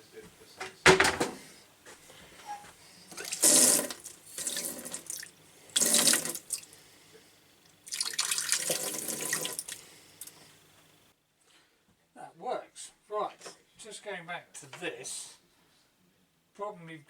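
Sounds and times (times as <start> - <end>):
water gushing into sink: 3.1 - 6.7, 7.9 - 10.3.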